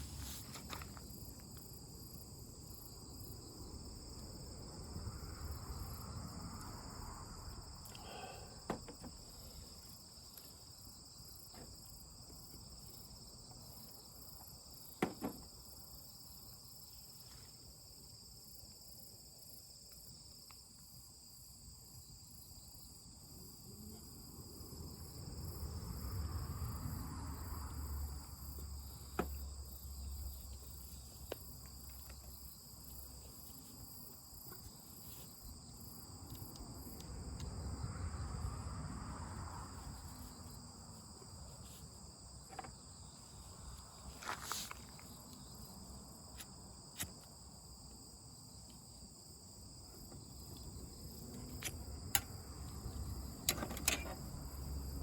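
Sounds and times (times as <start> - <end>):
insects chirping shrilly: 4.8 - 10.0.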